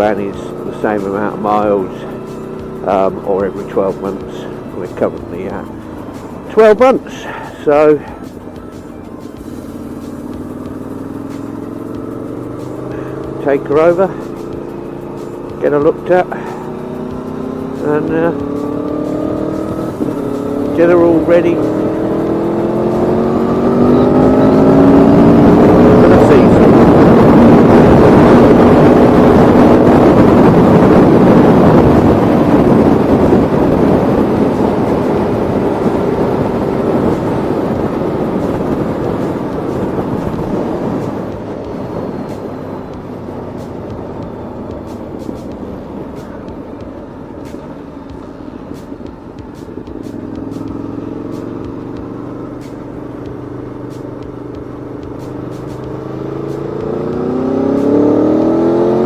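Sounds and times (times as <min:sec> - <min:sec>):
motorcycle engine running: 0:00.0 - 0:59.0
wind noise: 0:21.2 - 0:46.9.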